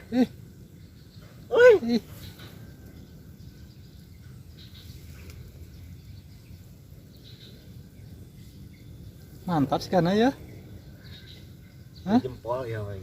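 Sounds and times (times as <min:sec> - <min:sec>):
steady low rumble: 0:02.1 - 0:12.4.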